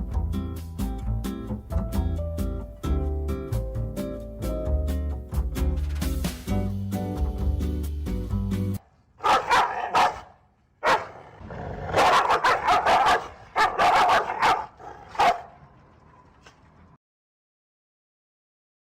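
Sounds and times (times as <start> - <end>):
background music: 0.0 - 8.8
dog barking: 9.2 - 15.6.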